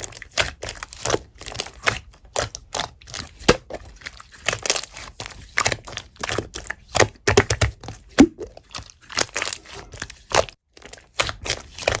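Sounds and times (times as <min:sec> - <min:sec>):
slime squeezed by hand: 0:08.2 - 0:08.6.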